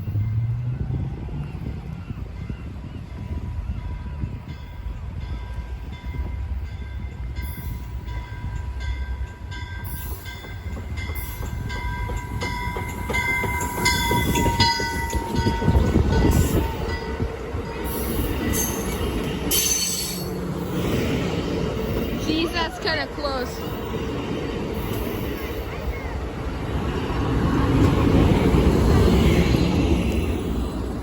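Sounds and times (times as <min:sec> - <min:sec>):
train rumbling past: 0:00.0 - 0:31.0.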